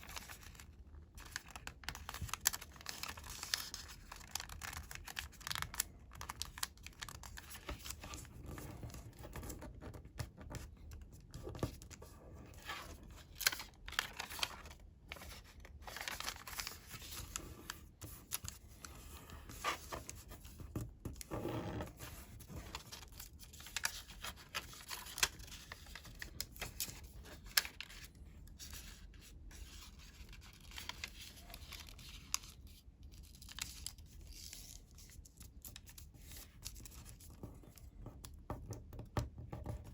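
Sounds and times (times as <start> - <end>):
paper rustling and crinkling: 0.0 - 38.0.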